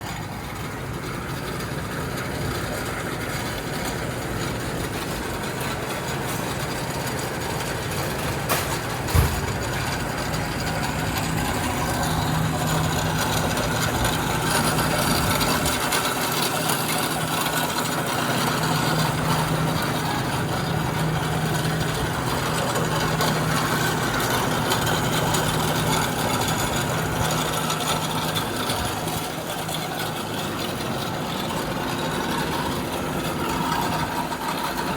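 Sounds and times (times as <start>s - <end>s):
bandsaw running: 0.2s - 34.9s.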